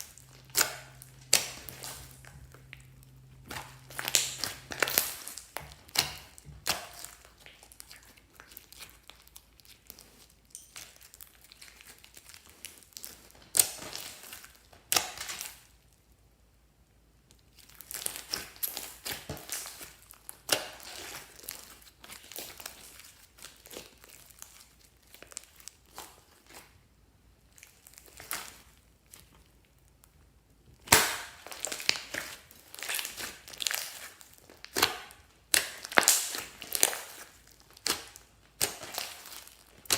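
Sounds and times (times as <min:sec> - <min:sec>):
slime squished by hand: 0:00.0 - 0:15.8, 0:17.4 - 0:26.8, 0:27.4 - 0:30.0, 0:30.7 - 0:39.9
sticky crackles and pops: 0:00.0 - 0:15.8, 0:27.4 - 0:39.9.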